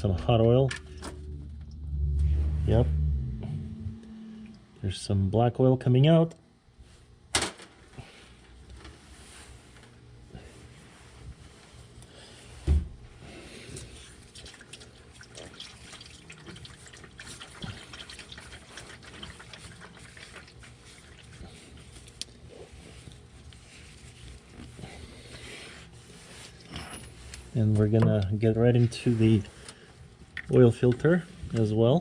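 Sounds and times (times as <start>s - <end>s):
low thump: 0.9s - 4.6s.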